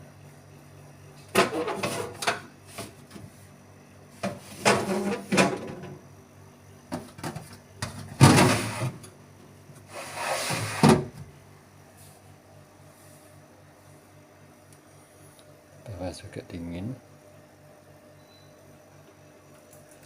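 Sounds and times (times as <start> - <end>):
refrigerator door and drawers knocking: 8.0 - 8.8.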